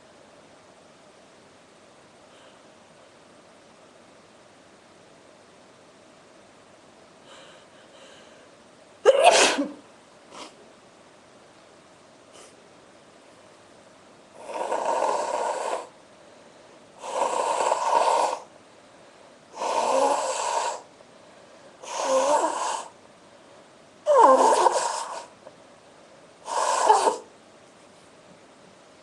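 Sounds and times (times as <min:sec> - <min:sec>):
woman blowing her nose: 0:09.1 - 0:10.6, 0:21.8 - 0:22.9, 0:24.1 - 0:25.4, 0:26.4 - 0:27.3.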